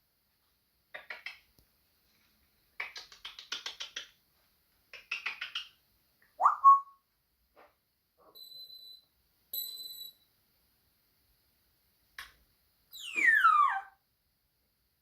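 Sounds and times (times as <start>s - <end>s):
parrot rising whistle: 6.4s - 6.9s, 13.0s - 13.9s.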